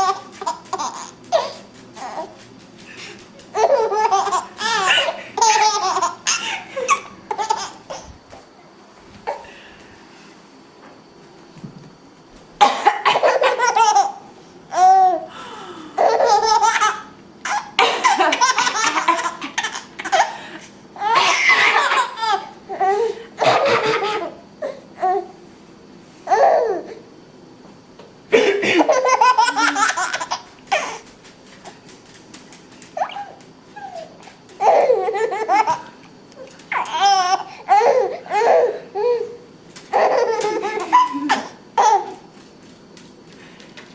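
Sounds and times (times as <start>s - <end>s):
child laughing: 3.4s - 8.1s, 16.0s - 20.3s, 21.0s - 24.4s, 28.6s - 31.0s, 33.0s - 36.0s, 39.9s - 42.2s
woman coughing: 12.6s - 13.4s, 17.8s - 18.3s, 21.1s - 22.1s, 23.4s - 24.3s, 28.3s - 29.0s, 40.9s - 41.6s.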